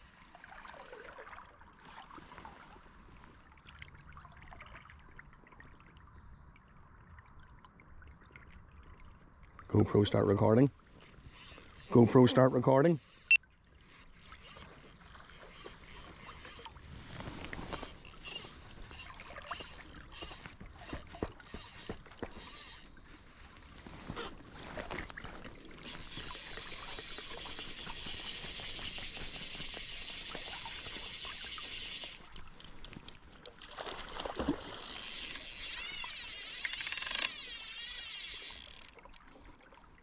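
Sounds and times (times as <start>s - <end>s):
fly reel buzzing: 11.3s - 12.2s, 13.0s - 23.1s, 25.8s - 32.6s, 33.9s - 39.0s.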